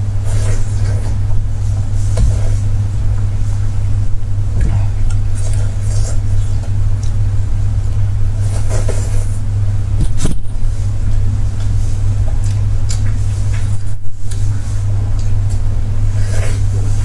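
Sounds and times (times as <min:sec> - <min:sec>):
steady low hum: 0:00.0 - 0:17.0
chewing and lip smacks: 0:12.3 - 0:13.2.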